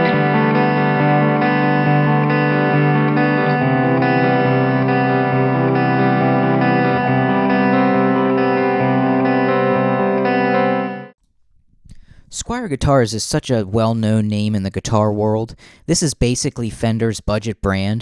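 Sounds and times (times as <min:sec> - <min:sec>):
electric guitar chords: 0:00.0 - 0:11.2.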